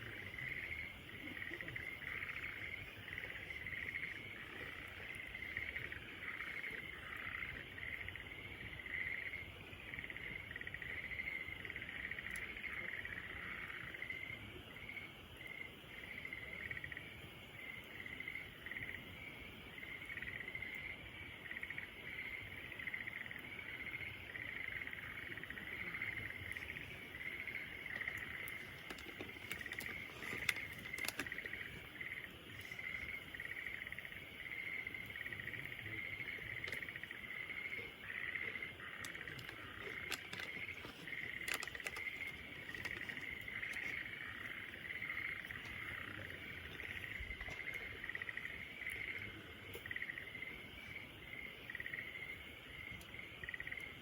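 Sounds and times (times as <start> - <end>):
crackling campfire: 0.0 - 54.0
insects chirping: 0.0 - 54.0.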